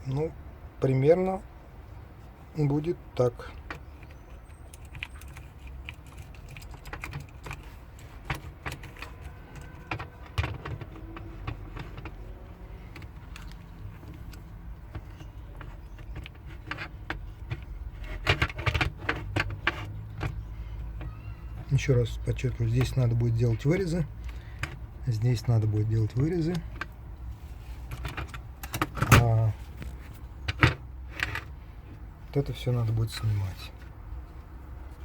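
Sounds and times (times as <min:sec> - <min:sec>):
small clicks and rattles: 0:03.6 - 0:21.7.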